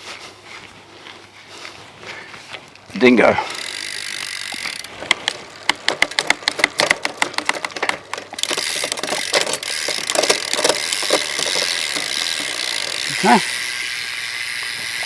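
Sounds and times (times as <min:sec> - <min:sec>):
ratchet clicking rapidly: 0:03.5 - 0:04.9, 0:08.3 - 0:15.0
bike knocks and rattles on stand: 0:03.6 - 0:13.4.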